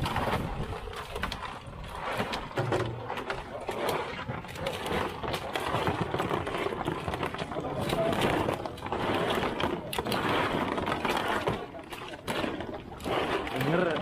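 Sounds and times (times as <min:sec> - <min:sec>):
crowd hubbub: 0:04.1 - 0:14.0.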